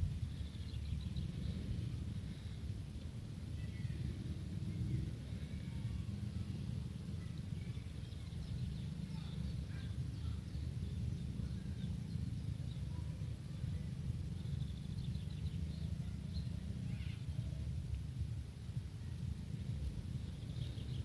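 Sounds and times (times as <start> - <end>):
steady low rumble: 0.0 - 21.0.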